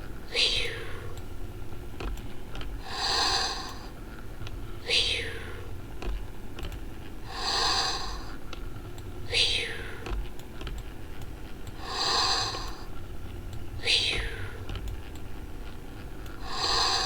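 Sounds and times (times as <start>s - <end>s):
recorded breathing sound: 2.8s - 4.0s, 4.8s - 5.8s, 7.2s - 8.4s, 9.3s - 10.2s, 11.7s - 13.1s, 13.8s - 14.8s, 16.3s - 17.0s.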